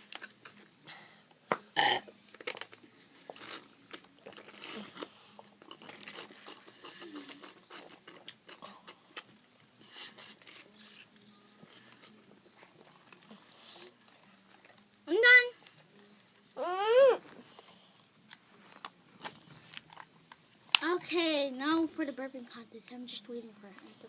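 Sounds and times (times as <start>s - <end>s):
juice boxes crinkling and clicking: 0.0s - 0.7s, 2.2s - 9.3s, 17.5s - 21.2s.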